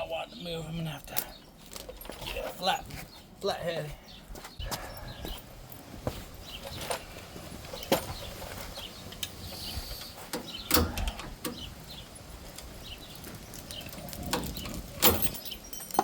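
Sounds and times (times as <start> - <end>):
metal tools clinking and knocking: 1.1 - 2.8, 13.5 - 16.0.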